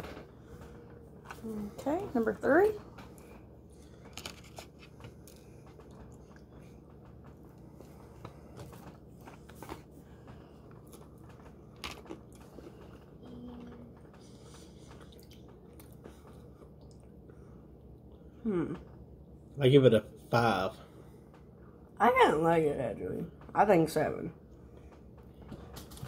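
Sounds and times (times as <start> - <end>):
people chewing: 3.0 - 18.8.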